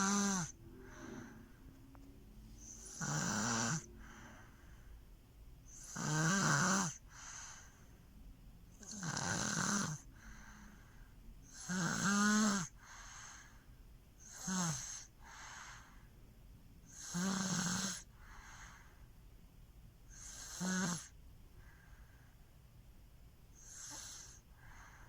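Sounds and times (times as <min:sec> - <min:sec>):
baby snoring: 0:00.0 - 0:01.4, 0:02.6 - 0:04.5, 0:05.7 - 0:07.6, 0:08.8 - 0:10.3, 0:11.4 - 0:13.4, 0:14.2 - 0:15.9, 0:16.9 - 0:18.6, 0:20.1 - 0:21.2, 0:23.6 - 0:24.5
baby breathing softly: 0:00.8 - 0:01.8, 0:03.8 - 0:05.1, 0:07.0 - 0:08.0, 0:10.1 - 0:11.2, 0:12.7 - 0:13.8, 0:14.9 - 0:16.1, 0:18.0 - 0:19.1, 0:23.9 - 0:25.0.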